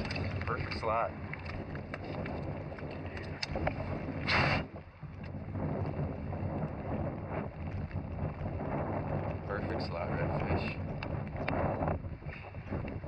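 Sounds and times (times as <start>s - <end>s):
rain and water noise: 0.0s - 11.5s
wind buffeting microphone: 0.0s - 13.0s.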